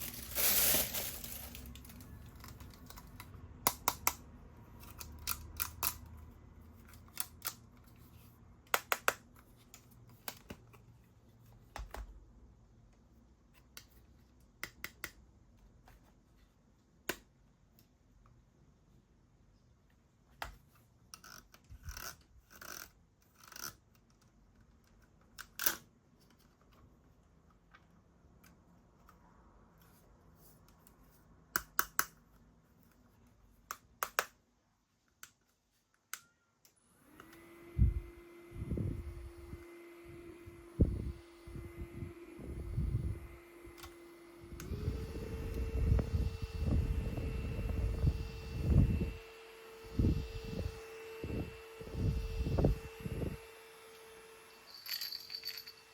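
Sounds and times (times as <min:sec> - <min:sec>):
packaging rustling and scraping: 0:00.0 - 0:03.2.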